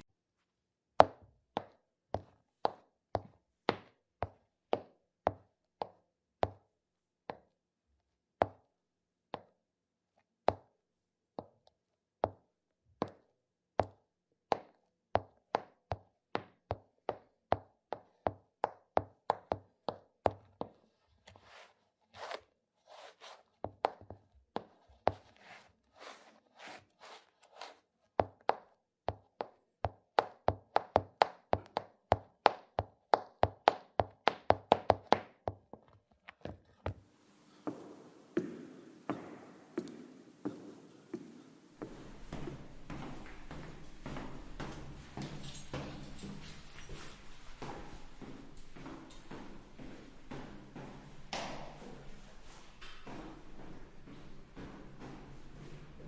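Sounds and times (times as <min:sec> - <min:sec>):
gritty scuffing footsteps: 0:37.2 - 0:56.0
sharp clicking footsteps: 0:37.4 - 0:56.0.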